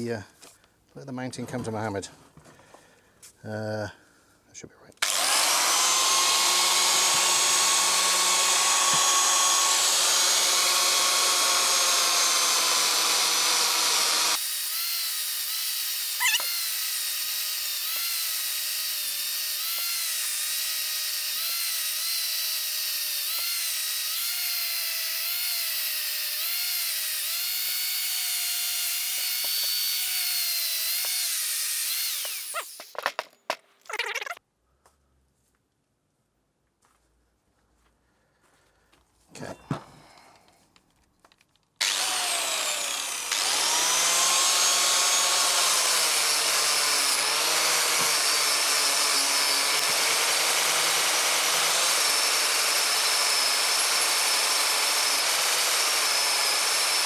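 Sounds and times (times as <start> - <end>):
power tool motor whine: 5.0 - 33.1, 41.8 - 57.0.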